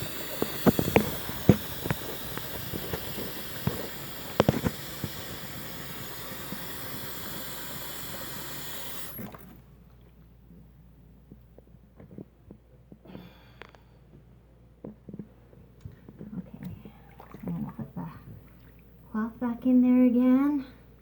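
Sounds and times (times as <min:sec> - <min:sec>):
water running from tap into sink: 0:00.0 - 0:09.6.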